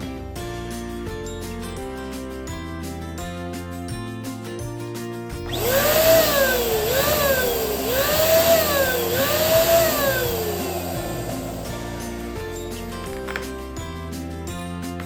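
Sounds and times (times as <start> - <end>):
background music: 0.0 - 15.0
electric pump hissing air: 5.4 - 12.9.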